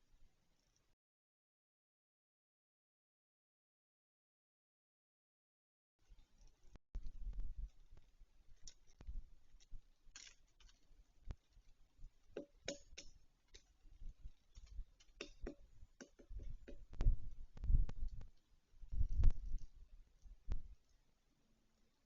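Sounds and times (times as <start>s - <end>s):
woodpecker tapping on wood: 12.3s - 13.7s, 14.5s - 17.1s.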